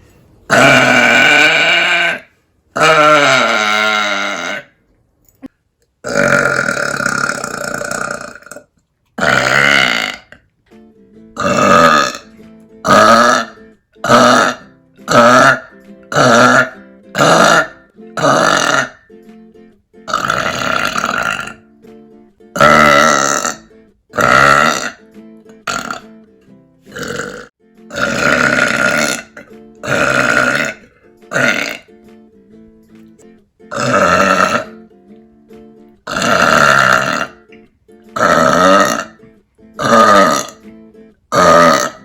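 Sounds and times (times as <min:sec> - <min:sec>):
woman burping loudly: 0:00.5 - 0:04.8, 0:06.0 - 0:10.5, 0:11.4 - 0:19.1, 0:20.1 - 0:21.7, 0:22.5 - 0:26.2, 0:26.9 - 0:31.9, 0:33.7 - 0:34.9, 0:36.0 - 0:40.7, 0:41.3 - 0:42.0.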